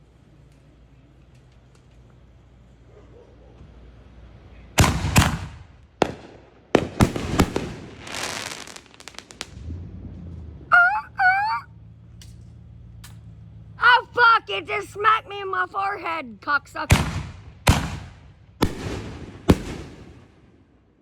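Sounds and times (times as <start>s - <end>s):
fireworks cracks and crackling: 4.8s - 9.8s, 16.8s - 20.8s
fireworks bangs: 4.8s - 11.6s, 16.7s - 20.8s.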